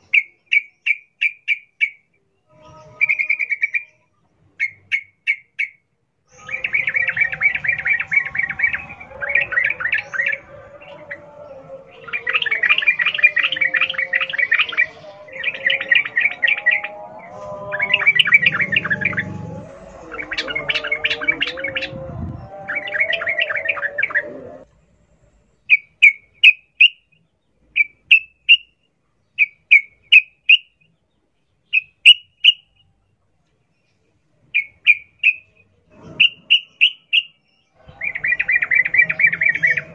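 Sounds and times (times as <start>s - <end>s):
bird rapid chattering song: 0.0s - 2.1s, 4.6s - 19.4s, 25.6s - 31.0s, 31.6s - 32.8s, 34.5s - 39.9s
faint wavering bird calls: 0.0s - 39.9s.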